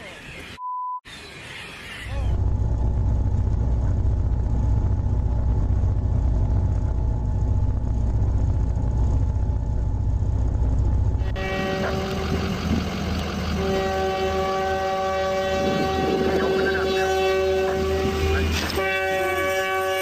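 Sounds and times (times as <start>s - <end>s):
locomotive engine rumbling: 2.1s - 20.0s.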